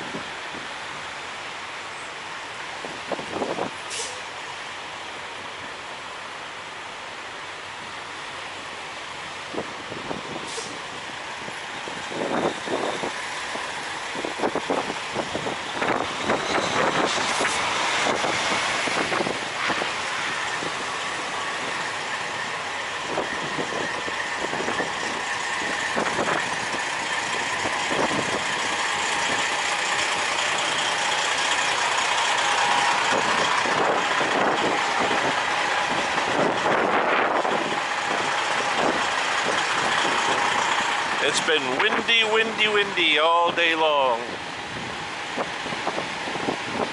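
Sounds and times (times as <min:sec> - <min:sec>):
truck engines idling: 0:00.0 - 0:46.9
wind buffeting microphone: 0:02.8 - 0:03.8, 0:09.5 - 0:30.9, 0:31.5 - 0:42.0, 0:44.3 - 0:46.9.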